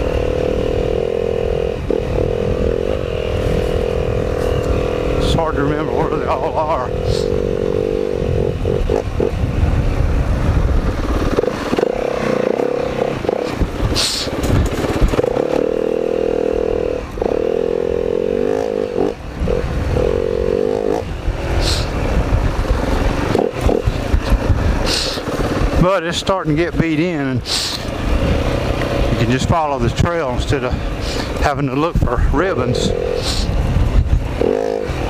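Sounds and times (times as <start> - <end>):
dirt bike engine revving: 0.0 - 35.0
short hissing swishes: 21.6 - 22.0, 27.4 - 27.9.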